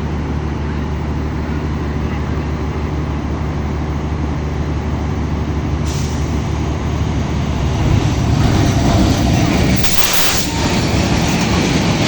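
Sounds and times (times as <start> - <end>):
diesel locomotive engine hum: 0.0 - 12.0
broad hiss: 9.7 - 11.0.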